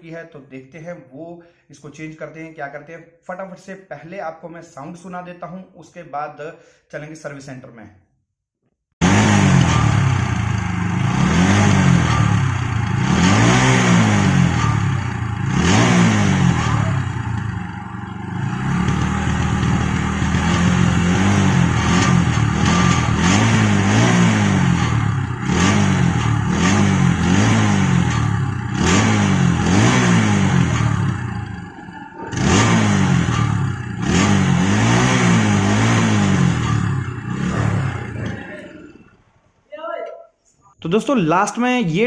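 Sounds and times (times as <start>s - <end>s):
motorcycle engine revving: 9.0s - 39.1s.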